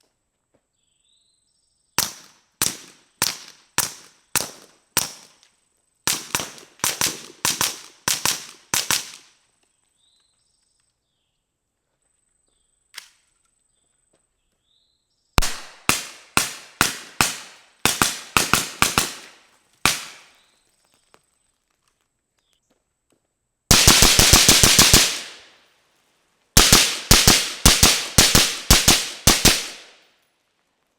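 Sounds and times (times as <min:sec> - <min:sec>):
suppressed gunshots: 0:15.4 - 0:19.3, 0:26.6 - 0:29.9.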